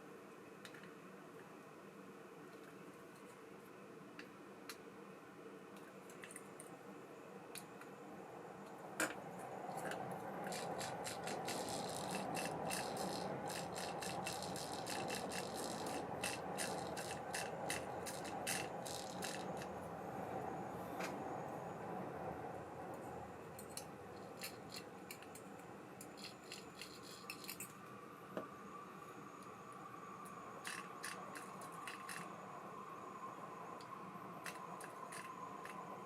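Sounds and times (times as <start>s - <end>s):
fishing reel clicking and rattling: 10.5s - 19.7s, 30.6s - 32.2s.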